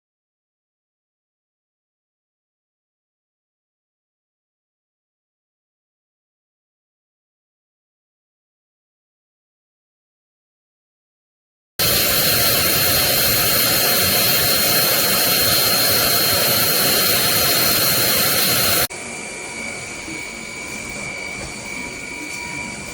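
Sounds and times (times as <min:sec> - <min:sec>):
airflow rush: 0:11.8 - 0:18.9
vacuum motor whining: 0:11.8 - 0:22.9.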